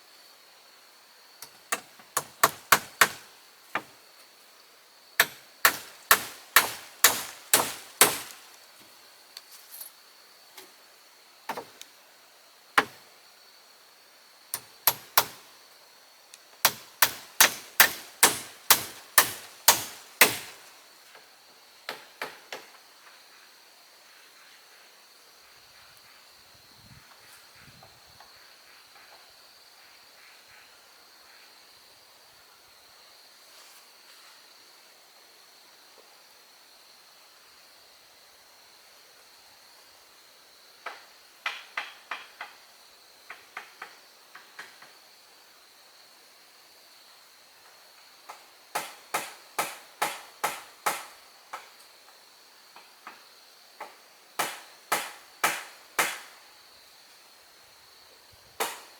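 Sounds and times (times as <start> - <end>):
hammer nailing wooden boards: 1.7 - 3.9, 5.2 - 8.4, 14.6 - 15.4, 16.6 - 20.7, 48.7 - 51.2, 54.4 - 56.3, 58.6 - 58.9.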